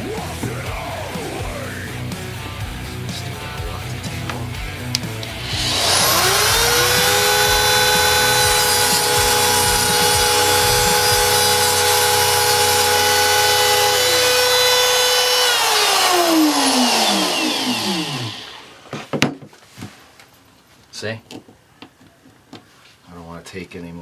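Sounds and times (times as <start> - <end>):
rotary power tool grinding: 5.0 - 18.9.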